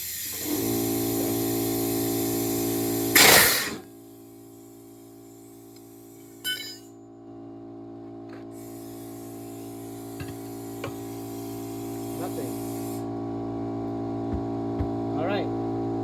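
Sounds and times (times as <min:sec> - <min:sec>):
tire bead seater air blast: 0:00.0 - 0:06.4, 0:08.5 - 0:13.1.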